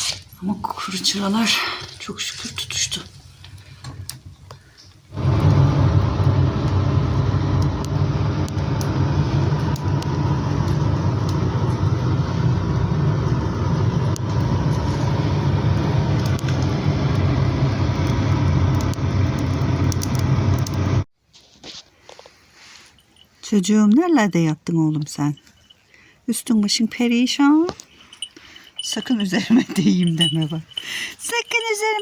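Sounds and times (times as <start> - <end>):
fire rumbling in firebox: 0.0 - 21.1, 28.2 - 30.9
faint fire crackles: 0.0 - 23.6.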